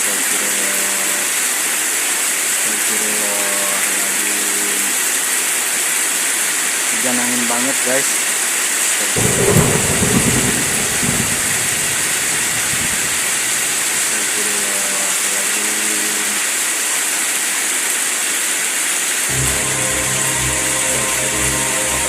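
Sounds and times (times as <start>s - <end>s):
heavy rain with wind: 0.0s - 22.0s
low rumble: 9.2s - 13.9s
faint pitched sound: 19.3s - 22.0s.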